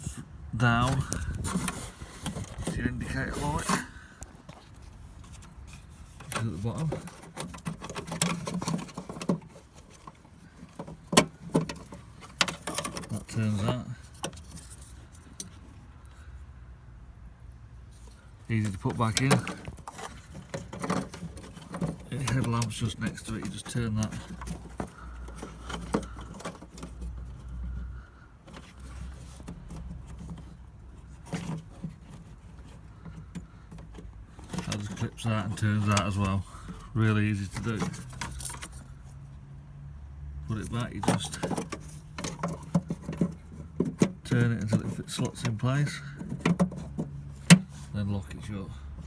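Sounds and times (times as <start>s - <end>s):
handling noise: 0.0s - 16.3s, 17.8s - 39.5s, 40.4s - 49.0s
plastic clicks and rattles: 6.2s - 15.6s.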